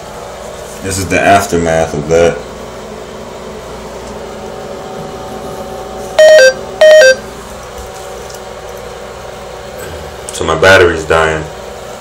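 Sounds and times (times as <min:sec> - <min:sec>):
electronic warning beeps: 0:06.2 - 0:07.2.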